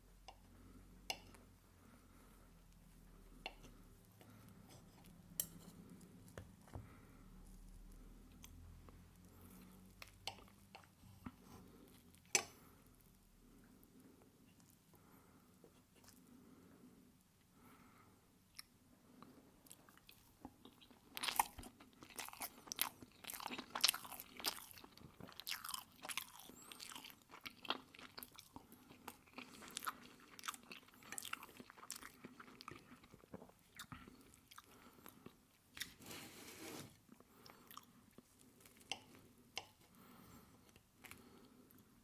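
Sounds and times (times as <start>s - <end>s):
close-miked chewing: 18.5s - 36.0s, 37.1s - 39.8s.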